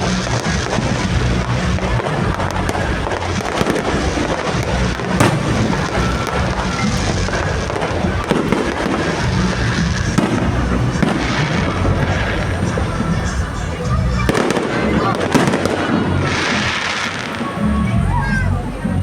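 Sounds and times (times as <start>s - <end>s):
sharp firework report: 0.0s - 18.9s
fireworks crackling and banging: 0.0s - 19.0s.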